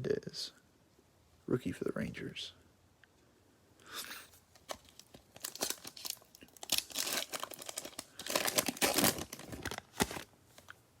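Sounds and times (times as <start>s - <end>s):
foil wrapper crinkling and tearing: 4.5s - 10.3s.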